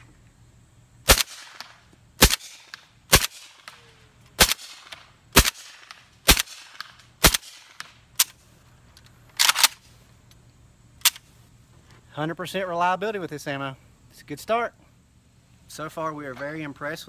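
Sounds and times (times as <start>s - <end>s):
suppressed gunshots with echo: 1.0s - 7.9s.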